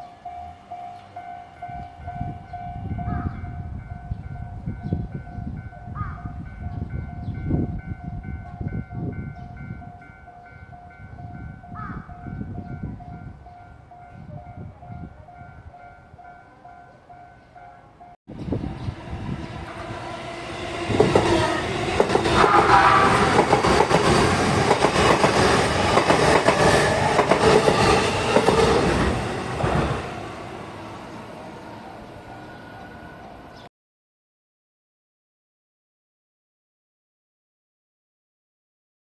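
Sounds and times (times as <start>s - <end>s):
level crossing warning bell: 0.0s - 18.2s.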